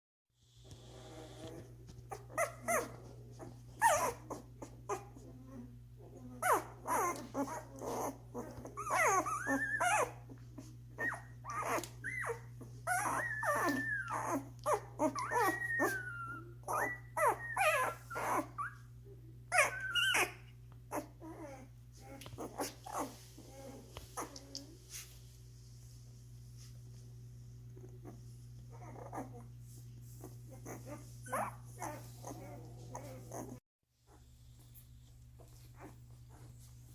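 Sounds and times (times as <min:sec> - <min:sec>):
puppies whimpering and squealing: 0:00.9 - 0:25.2, 0:27.8 - 0:34.8, 0:35.4 - 0:36.9.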